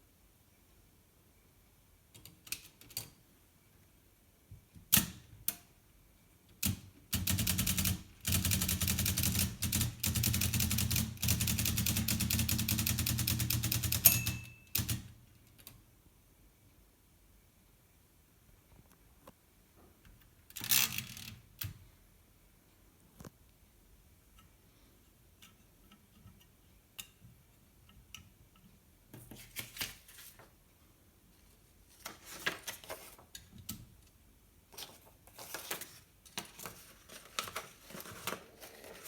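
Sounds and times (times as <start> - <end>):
typewriter keystrokes: 6.6 - 15.8
typewriter bell ding: 13.7 - 15.0.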